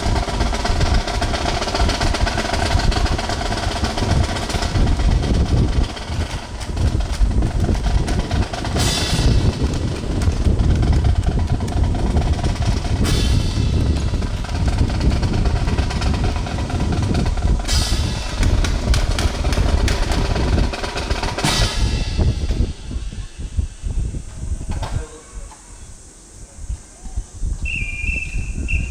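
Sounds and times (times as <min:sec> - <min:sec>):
snare and bass drum cadence: 0:00.0 - 0:24.3
crash cymbal: 0:06.9 - 0:11.6, 0:12.7 - 0:16.3, 0:17.4 - 0:24.7.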